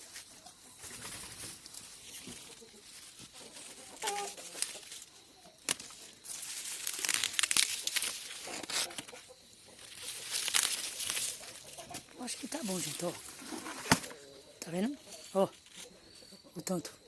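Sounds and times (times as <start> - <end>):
chicken clucking: 0.0 - 6.2, 7.8 - 16.8
dry corn leaves rustling: 0.0 - 16.2
corn ears snapping off stalks: 4.0 - 9.2, 9.8 - 14.2.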